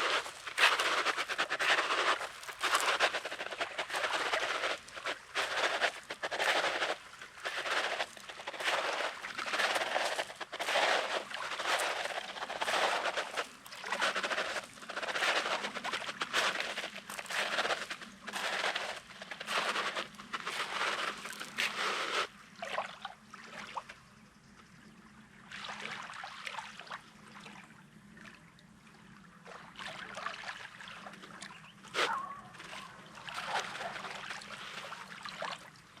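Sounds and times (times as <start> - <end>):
footsteps crunching on sand: 0.0 - 22.3, 33.3 - 34.9.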